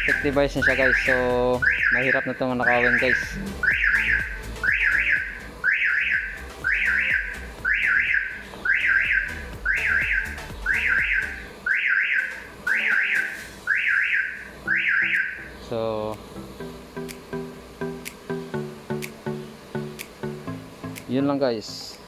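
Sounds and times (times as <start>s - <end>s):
car alarm rising chirp: 0.0s - 15.7s.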